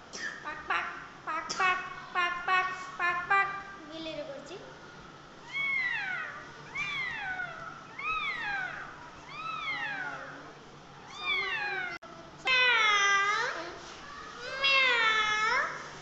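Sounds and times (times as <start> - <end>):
cat meowing: 5.4 - 10.4, 11.0 - 12.0.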